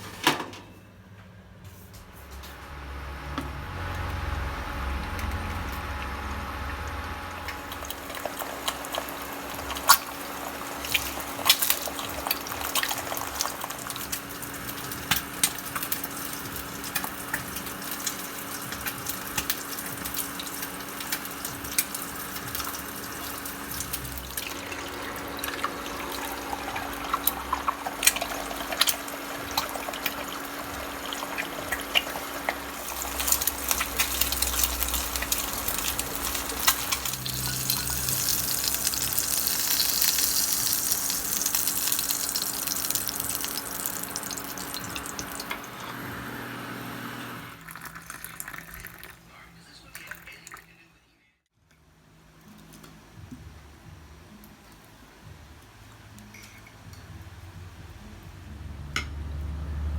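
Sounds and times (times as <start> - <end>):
tap water running into sink: 5.1 - 45.8, 47.6 - 49.2.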